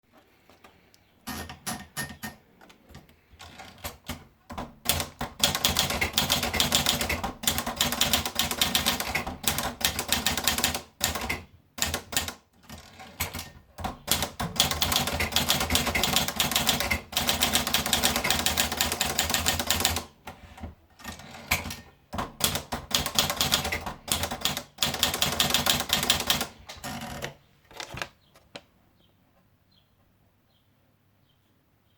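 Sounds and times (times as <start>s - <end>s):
typewriter typing: 3.4s - 28.1s.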